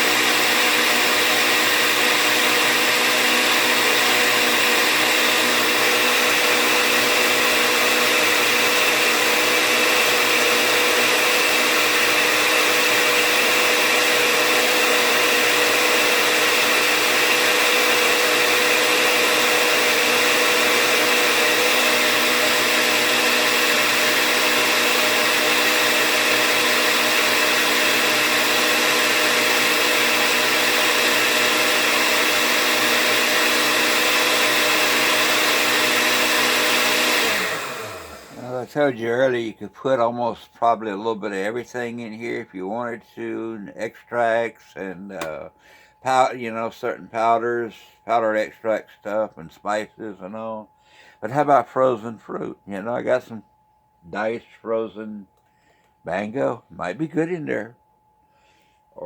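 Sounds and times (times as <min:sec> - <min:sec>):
blender motor running: 0:00.0 - 0:38.9.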